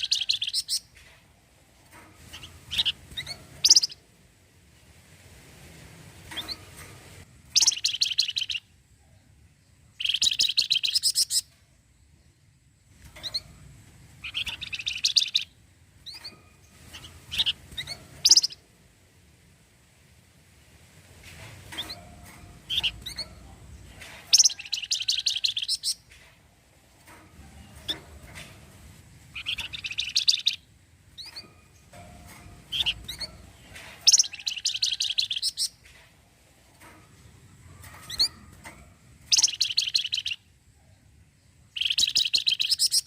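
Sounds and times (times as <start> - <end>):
bird rattling trills: 0.0 - 1.0, 2.2 - 4.0, 7.5 - 8.6, 14.2 - 18.6, 21.7 - 23.4, 24.2 - 26.2, 27.0 - 35.8, 37.8 - 40.4, 41.8 - 43.0
bird chattering trill: 2.7 - 4.0, 7.6 - 8.6, 10.0 - 11.5, 14.2 - 15.5, 17.3 - 18.6, 22.7 - 23.4, 24.3 - 26.0, 29.3 - 30.6, 34.0 - 35.8, 39.3 - 40.4, 41.8 - 43.0.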